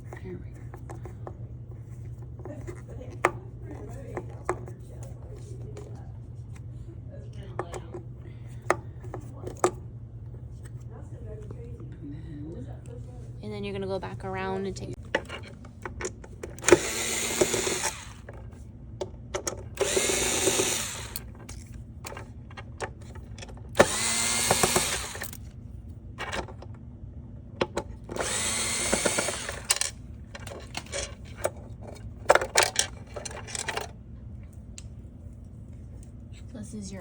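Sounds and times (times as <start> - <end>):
small clicks and handling noises: 15.0 - 26.8, 27.6 - 36.5
power drill running: 16.6 - 18.3, 19.8 - 21.3, 23.7 - 25.4, 28.1 - 30.0.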